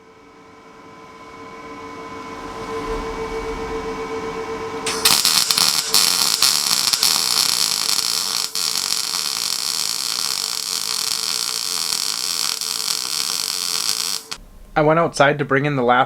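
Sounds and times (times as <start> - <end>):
sharp welding pops: 4.9 - 14.4
welding arc crackling: 4.9 - 14.4.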